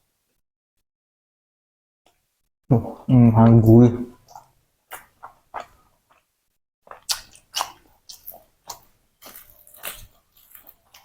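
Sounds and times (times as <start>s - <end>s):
close-up chewing: 4.2s - 6.3s, 6.9s - 11.0s.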